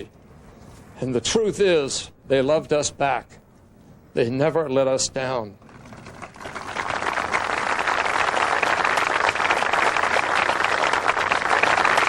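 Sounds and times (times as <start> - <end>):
crowd applauding: 5.7 - 12.0.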